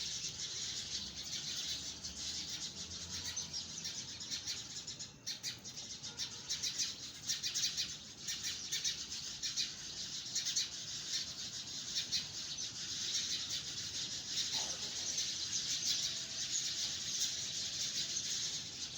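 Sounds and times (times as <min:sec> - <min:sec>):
birds chirping: 0:00.0 - 0:18.9.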